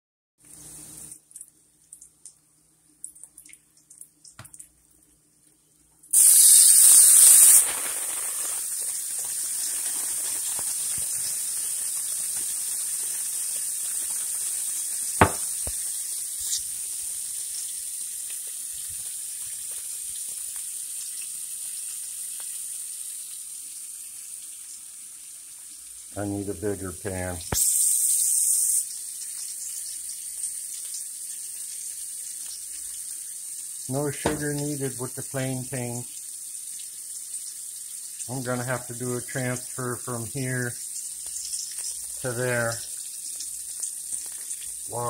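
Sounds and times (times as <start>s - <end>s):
food sizzling in frying pan: 0.4s - 1.3s, 6.1s - 45.0s
sharp knock: 15.2s - 15.6s, 34.2s - 34.4s.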